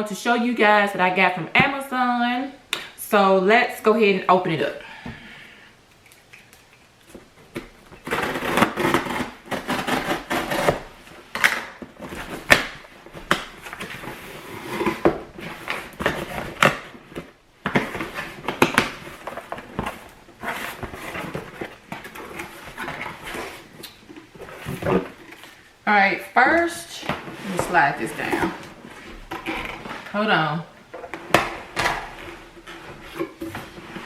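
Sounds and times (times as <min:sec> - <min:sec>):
cardboard packaging rustling: 0:05.9 - 0:25.8, 0:26.6 - 0:34.0.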